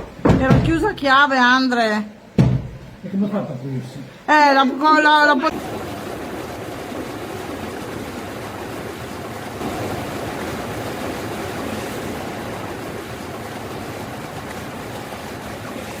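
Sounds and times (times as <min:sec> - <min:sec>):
floodwater rushing: 0:04.3 - 0:16.0.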